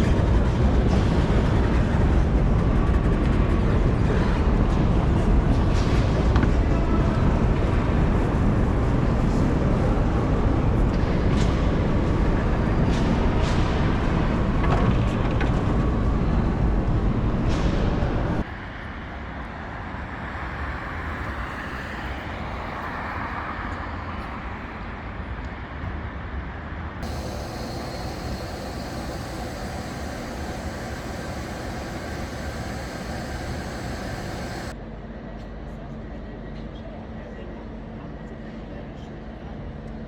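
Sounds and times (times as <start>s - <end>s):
moving vehicle rumble and hiss: 17.6s - 24.9s, 27.0s - 34.8s.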